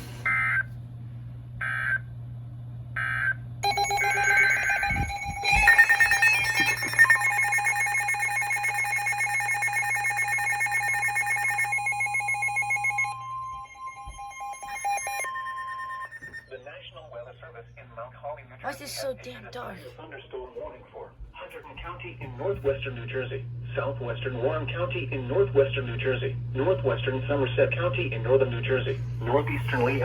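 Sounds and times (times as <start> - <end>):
electronic alarm tones: 3.0 - 16.6, 29.6 - 30.0
warbling data bursts: 3.6 - 16.4
steady alert tone: 3.6 - 16.5.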